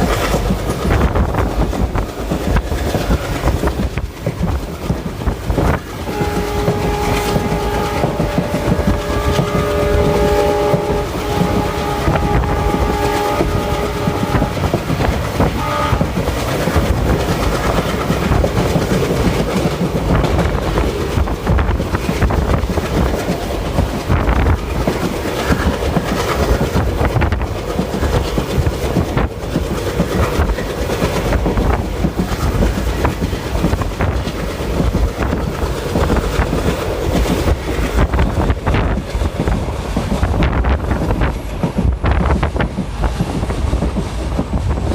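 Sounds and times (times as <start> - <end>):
train rumbling: 0.0 - 44.9
locomotive horn chord: 6.1 - 14.8, 15.5 - 16.2.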